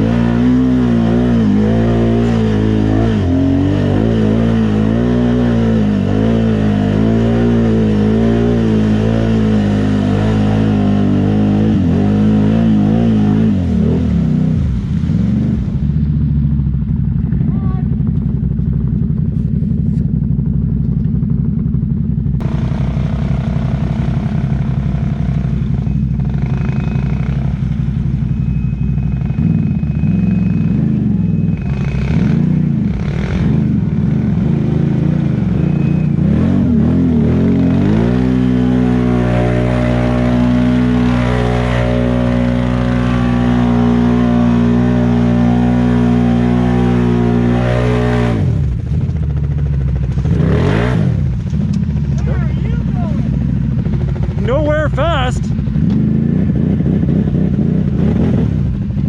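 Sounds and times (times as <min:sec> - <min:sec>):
atv engine revving under load: 0:00.0 - 0:16.8, 0:21.4 - 0:59.0.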